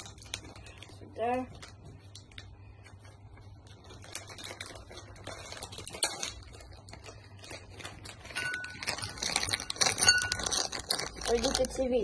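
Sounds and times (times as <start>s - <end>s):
plastic bag rustling: 3.1s - 12.0s
candy pieces clicking: 3.9s - 12.0s.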